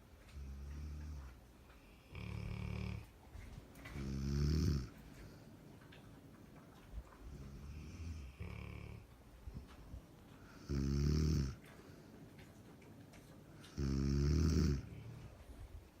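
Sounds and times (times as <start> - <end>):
quiet breathing: 0.0 - 6.0, 7.0 - 16.0
loud low snores: 2.1 - 3.1, 3.9 - 5.0, 7.3 - 9.1, 10.5 - 11.6, 13.7 - 15.3.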